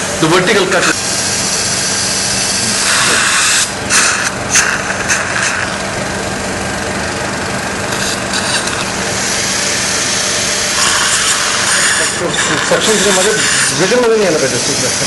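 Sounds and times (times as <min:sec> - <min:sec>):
surgical drill grinding whir: 0:00.0 - 0:15.0.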